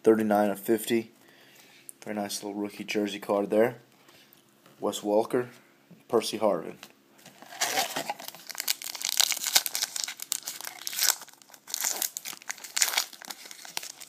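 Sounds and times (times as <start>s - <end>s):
wrapper tearing and crinkling: 7.3s - 14.0s.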